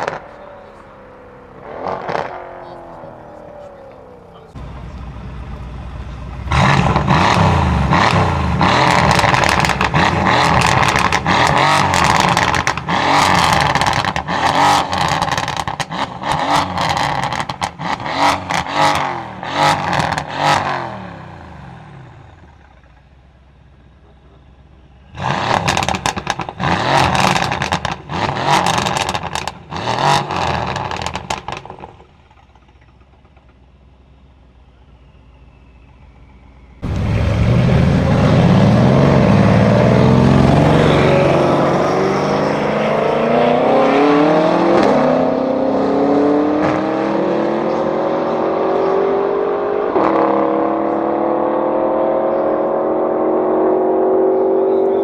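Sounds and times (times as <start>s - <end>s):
exhaust crackles and pops: 0.0s - 0.9s, 1.6s - 20.7s, 25.2s - 34.0s
car engine revving: 0.0s - 23.0s, 24.1s - 55.0s.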